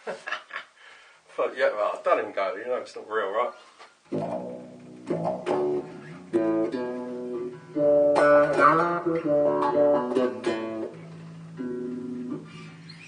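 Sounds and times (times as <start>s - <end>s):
bass guitar plucked notes: 4.1s - 13.0s.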